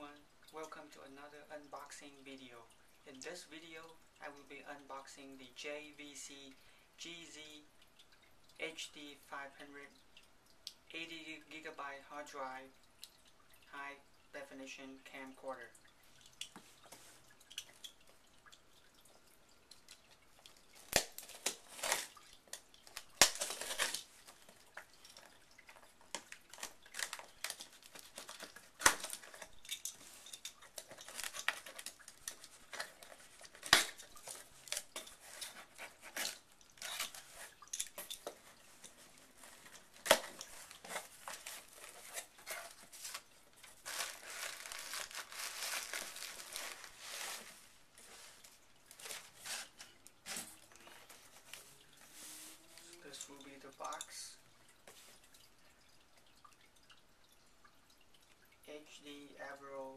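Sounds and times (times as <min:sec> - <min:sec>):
packaging crinkling and tearing: 0:20.8 - 0:51.6.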